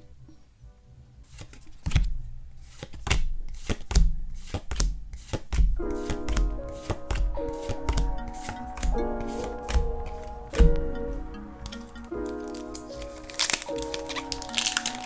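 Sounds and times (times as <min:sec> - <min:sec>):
cards and packaging tapping: 0:01.3 - 0:15.0
background music: 0:05.8 - 0:15.0.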